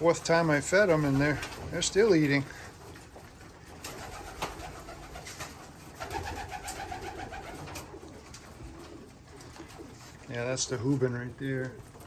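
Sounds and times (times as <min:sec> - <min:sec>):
pigeons cooing: 0:00.0 - 0:10.3.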